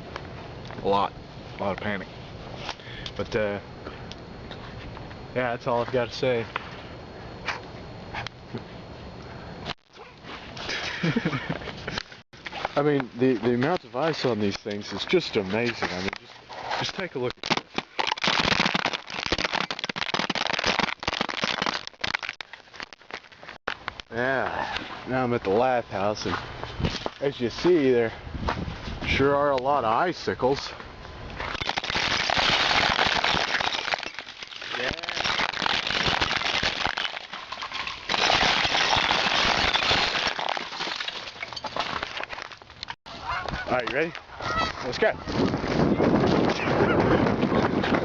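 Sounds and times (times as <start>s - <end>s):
ice crackling and crunching: 10.5s - 24.3s, 31.4s - 43.0s.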